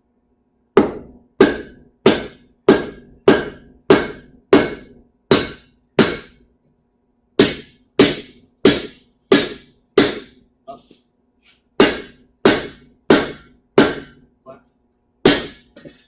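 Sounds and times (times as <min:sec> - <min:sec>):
hammer striking steel on anvil: 0:00.8 - 0:06.4, 0:07.4 - 0:10.4, 0:11.8 - 0:14.3, 0:15.2 - 0:16.0.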